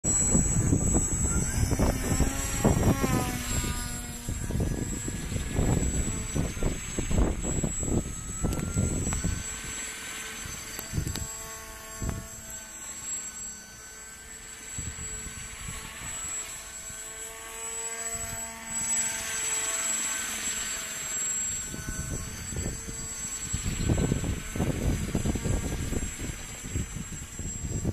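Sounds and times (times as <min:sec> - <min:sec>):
wind gusts on microphone: 0:00.0 - 0:12.5, 0:21.5 - 0:27.9
model aircraft propeller droning: 0:00.0 - 0:27.9.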